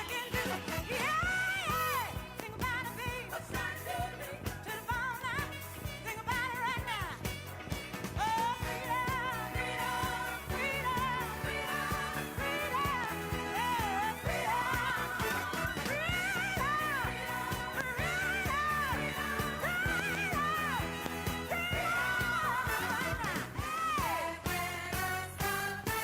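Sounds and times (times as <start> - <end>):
pop music with beat and bass: 0.0 - 26.0.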